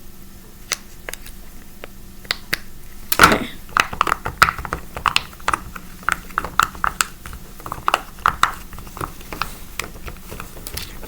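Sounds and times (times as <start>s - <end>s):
fidget toy bubbles popping: 3.1s - 9.1s.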